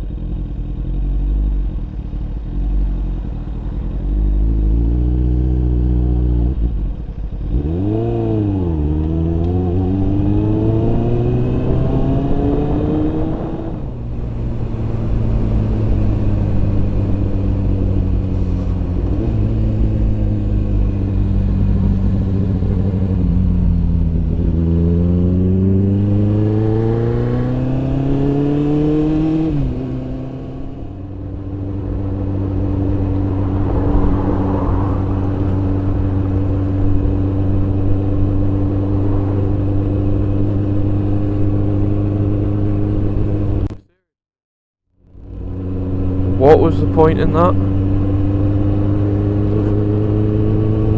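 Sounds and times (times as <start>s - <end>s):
motorcycle engine revving: 0.0s - 44.0s, 45.0s - 50.9s
wind rushing over microphone: 8.7s - 24.8s, 25.5s - 43.8s.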